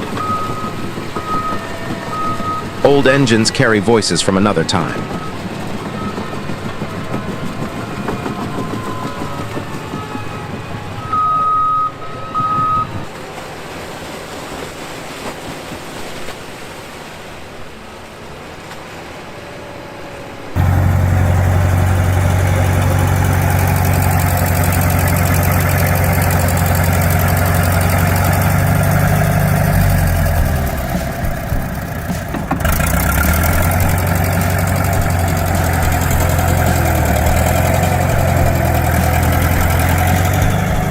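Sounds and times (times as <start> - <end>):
heavy equipment engine running: 0.0 - 12.8, 20.6 - 40.9
machinery running quietly: 20.6 - 40.9.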